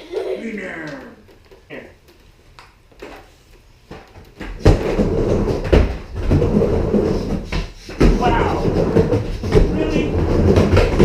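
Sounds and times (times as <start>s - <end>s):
skateboard thudding on ramp: 4.4s - 11.0s
skateboard wheels rolling on ramp: 4.5s - 11.0s.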